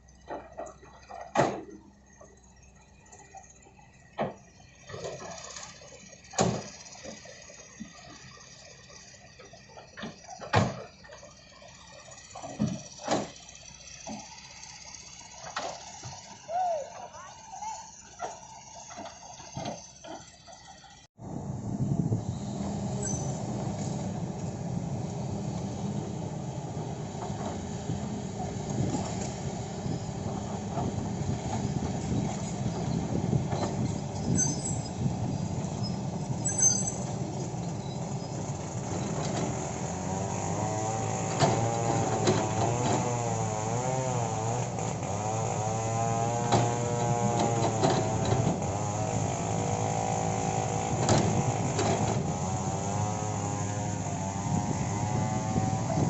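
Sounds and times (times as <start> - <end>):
excavator diesel engine running: 0.0 - 56.0
whining tone: 14.1 - 56.0.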